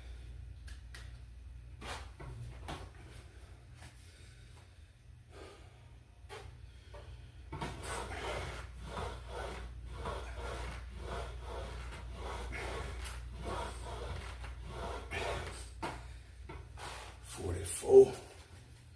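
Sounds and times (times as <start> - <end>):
steady low hum: 0.0 - 18.9
exercise machine rubbing: 1.7 - 3.4, 6.3 - 17.6
man breathing hard: 3.1 - 9.6.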